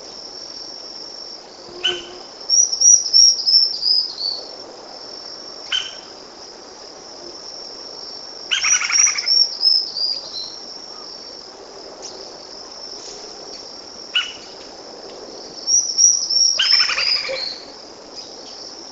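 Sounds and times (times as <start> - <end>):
high-pitched insect drone: 0.0 - 6.2, 15.4 - 18.9.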